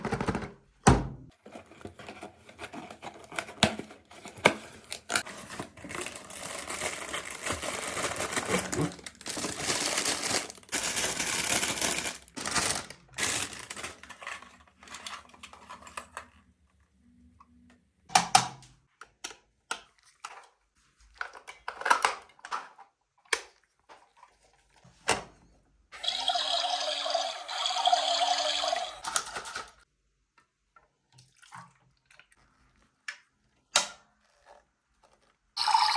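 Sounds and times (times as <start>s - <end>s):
plastic packaging crinkling and tearing: 1.5s - 16.2s.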